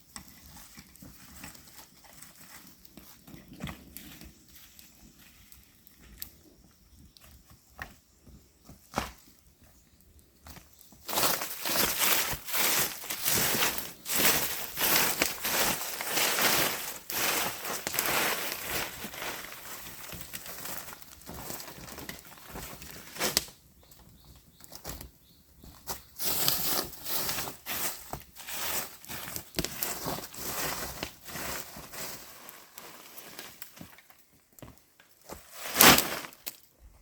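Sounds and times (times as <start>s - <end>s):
rustling and crackling: 0.0s - 37.0s
loud crunch: 11.0s - 21.7s, 35.3s - 36.6s.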